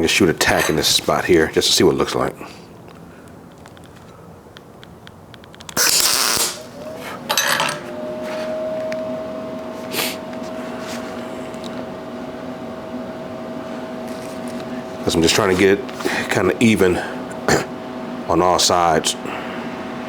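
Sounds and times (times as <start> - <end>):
steady whine: 0.0 - 20.0
welding bursts crackling hiss: 5.4 - 7.3.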